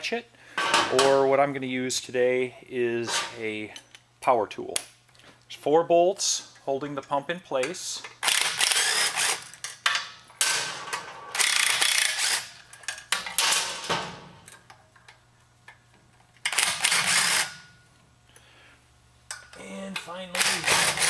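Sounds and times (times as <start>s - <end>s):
power tool running in bursts: 20.4s - 21.0s.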